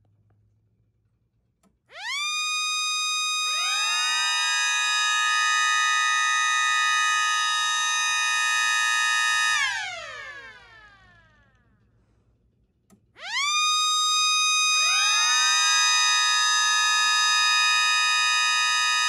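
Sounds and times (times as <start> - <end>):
electric sirens wailing: 13.2 - 19.0.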